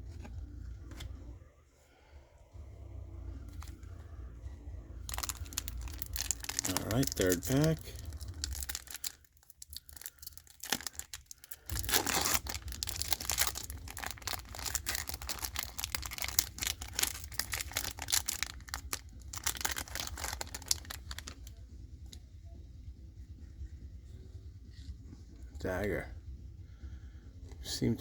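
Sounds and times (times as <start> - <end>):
wrapper tearing and crinkling: 5.1 - 21.5.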